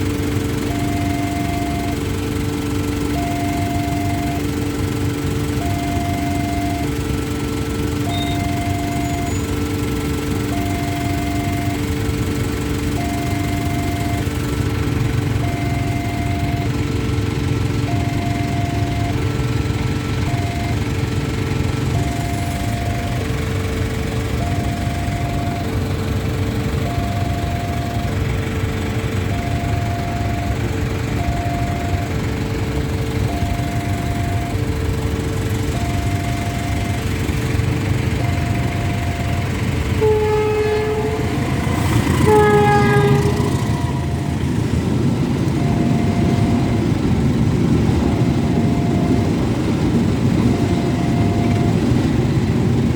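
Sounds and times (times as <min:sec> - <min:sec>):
passing train rumble: 0:00.0 - 0:52.9
two-tone level crossing siren: 0:00.0 - 0:52.9
train horn: 0:39.9 - 0:44.8.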